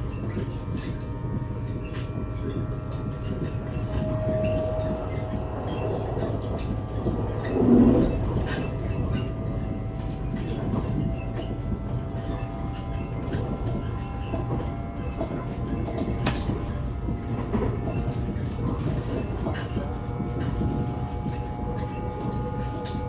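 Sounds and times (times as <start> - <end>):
electric train rumble and motor tones: 0.0 - 23.0.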